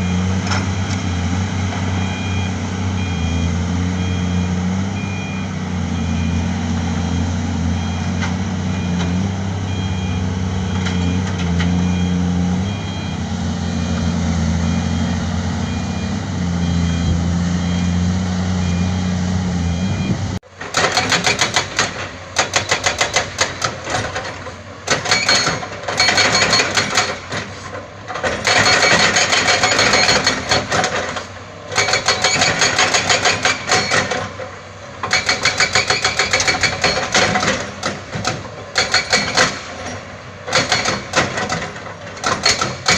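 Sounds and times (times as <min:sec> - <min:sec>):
heavy diesel machinery running: 0:00.0 - 0:42.9
reversing alarm beeping: 0:01.9 - 0:20.4, 0:25.1 - 0:27.2, 0:28.4 - 0:30.7, 0:31.8 - 0:34.1
rapid loud clattering knocks: 0:20.6 - 0:27.5.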